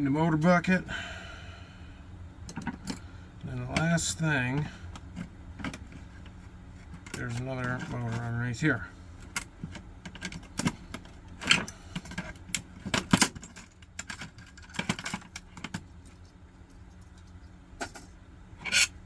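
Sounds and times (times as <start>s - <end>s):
clicks and knocks of handling: 2.4s - 3.1s, 4.6s - 8.4s, 9.2s - 18.9s
small metal parts rattling: 9.2s - 19.0s.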